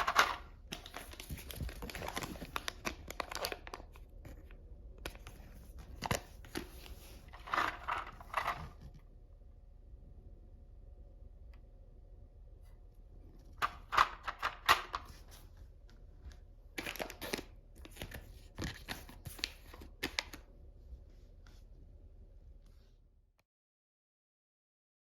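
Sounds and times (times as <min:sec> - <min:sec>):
packaging rustling: 0:00.0 - 0:08.8, 0:16.7 - 0:20.4.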